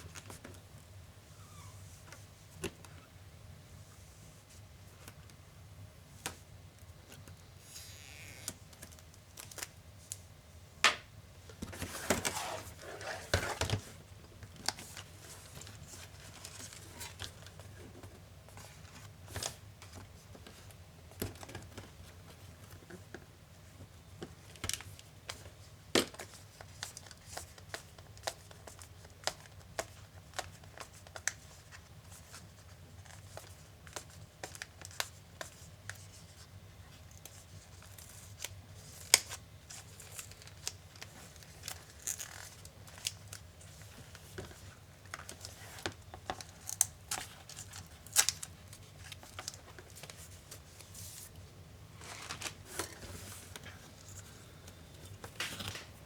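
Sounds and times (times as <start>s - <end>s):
crinkly tearing rustle: 37.3s - 44.4s.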